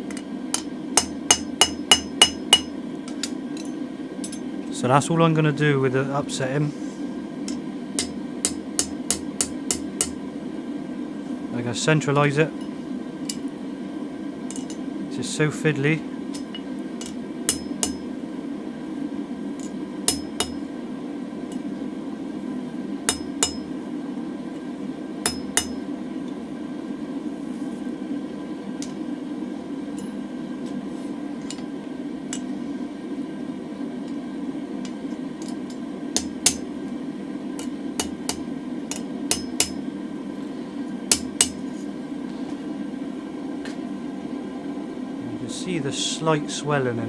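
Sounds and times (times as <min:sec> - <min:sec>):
hammer ringing on anvil: 0:01.0 - 0:02.8, 0:20.1 - 0:20.6, 0:23.1 - 0:23.7, 0:25.2 - 0:25.8, 0:39.3 - 0:39.8.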